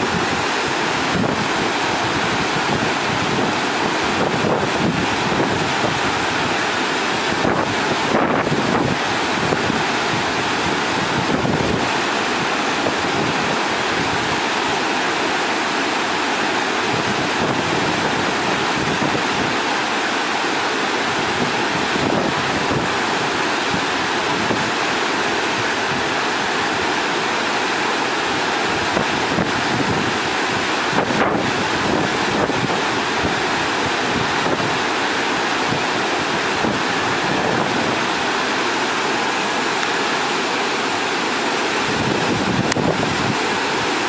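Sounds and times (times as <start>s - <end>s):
wind on microphone: 0.0s - 14.4s, 16.8s - 19.6s, 21.1s - 24.8s, 28.6s - 39.0s, 41.7s - 44.0s
water noise: 0.0s - 44.0s.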